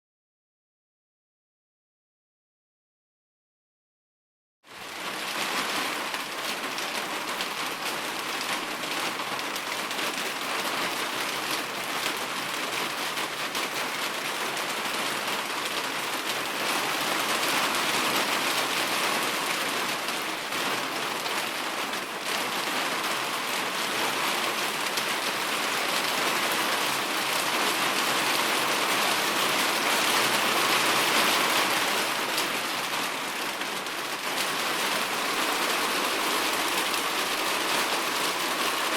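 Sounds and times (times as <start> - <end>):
rain on hard surfaces: 4.7 - 38.9.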